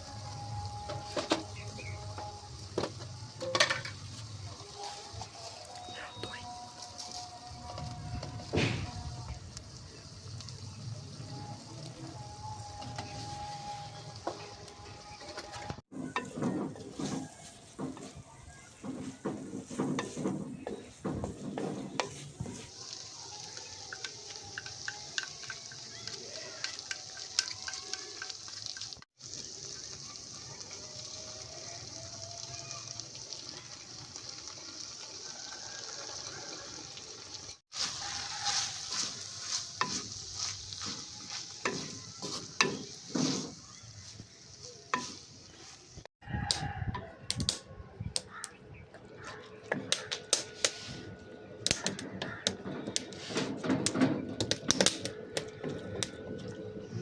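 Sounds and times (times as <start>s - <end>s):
food sizzling in a pan: 0.0s - 46.4s
utensil clicking in a pan: 22.9s - 29.0s.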